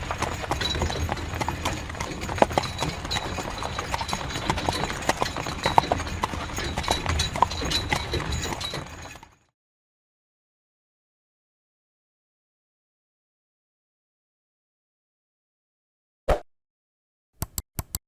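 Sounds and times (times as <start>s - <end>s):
carriage wheels rumbling: 0.0s - 9.5s
horse hooves clip-clopping: 0.0s - 9.5s.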